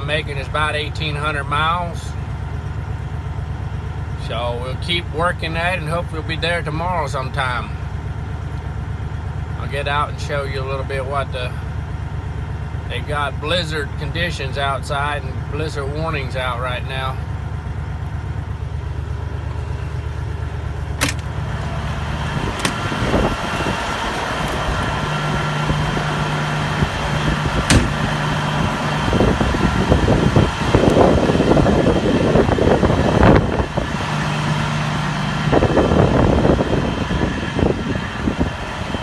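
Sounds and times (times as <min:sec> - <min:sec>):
diesel truck engine idling: 0:00.0 - 0:39.0
sharp click: 0:27.7 - 0:28.1.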